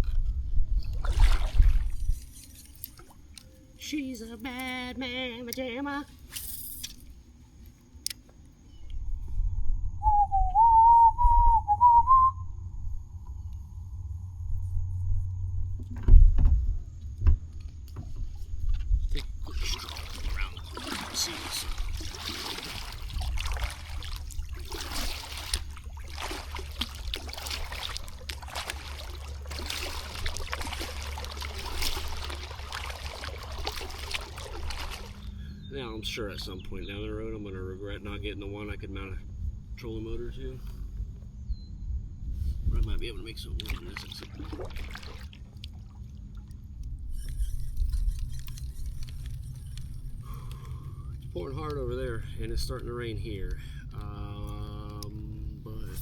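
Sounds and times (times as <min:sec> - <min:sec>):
steady low rumble: 0:00.0 - 0:02.3, 0:08.8 - 0:56.0
paddle splashing through water: 0:00.8 - 0:03.4, 0:19.2 - 0:35.3, 0:43.6 - 0:46.5
wind buffeting microphone: 0:08.9 - 0:35.7, 0:40.8 - 0:44.7
person whistling: 0:10.0 - 0:12.5
water dripping off paddle: 0:19.5 - 0:35.2.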